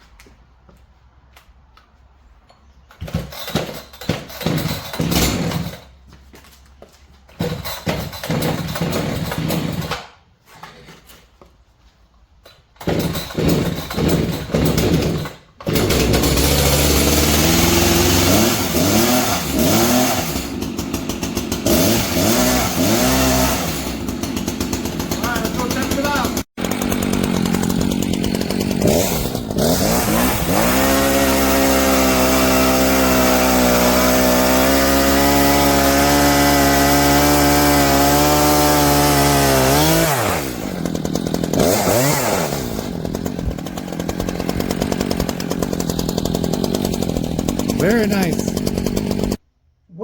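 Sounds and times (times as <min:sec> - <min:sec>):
chainsaw starting and revving: 0:03.1 - 0:06.0, 0:07.4 - 0:10.8, 0:12.7 - 0:49.4.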